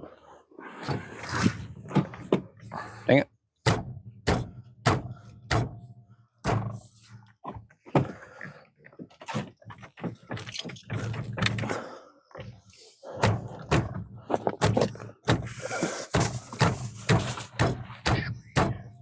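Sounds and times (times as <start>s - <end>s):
hardware knocking and rattling: 3.6s - 8.2s, 9.2s - 19.0s.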